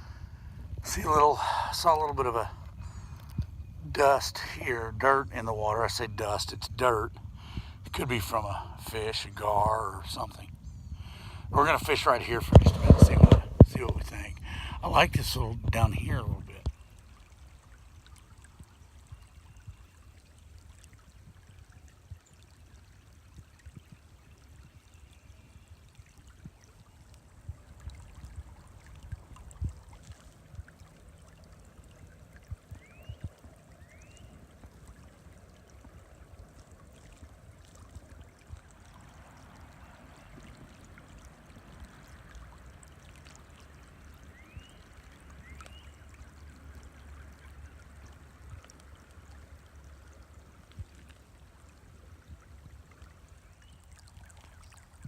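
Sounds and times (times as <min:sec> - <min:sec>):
river water flowing: 0:00.0 - 0:55.0
low rumble: 0:11.5 - 0:16.7.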